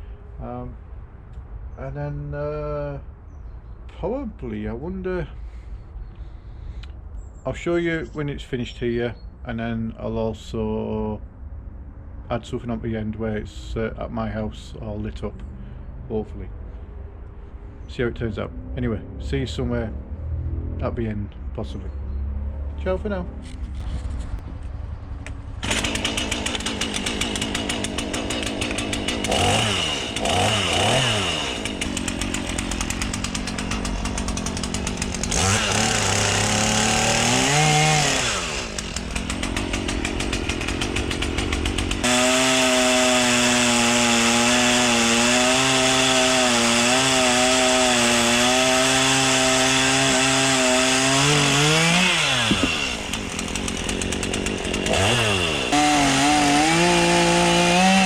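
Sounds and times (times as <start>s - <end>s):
chainsaw cutting log: 25.6s - 58.0s.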